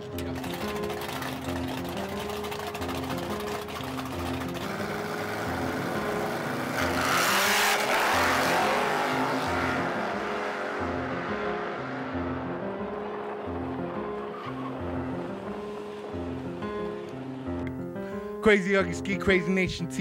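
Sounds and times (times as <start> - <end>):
car rushing past: 4.4 - 17.6.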